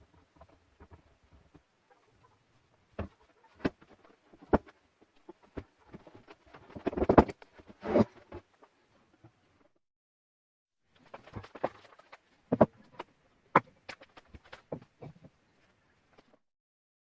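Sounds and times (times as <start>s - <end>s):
hard objects knocking and clicking: 6.7s - 8.5s.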